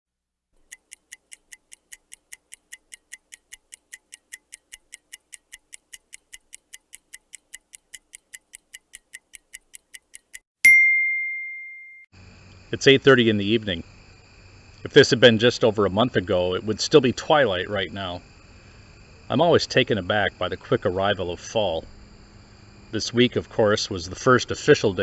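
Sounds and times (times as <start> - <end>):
microwave timer ticking: 0.6 - 10.5
timer bell ding: 10.7 - 12.1.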